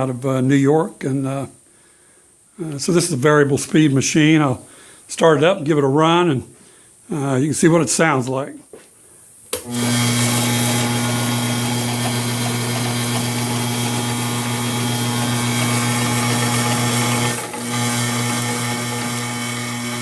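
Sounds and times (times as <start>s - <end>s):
grinder belt hiss: 8.8s - 20.0s
belt grinder motor hum: 9.6s - 20.0s.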